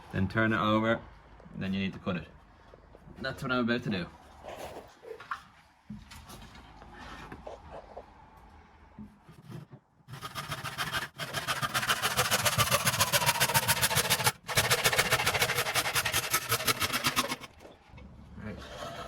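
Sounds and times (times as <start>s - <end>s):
power saw cutting wood: 10.1s - 17.5s.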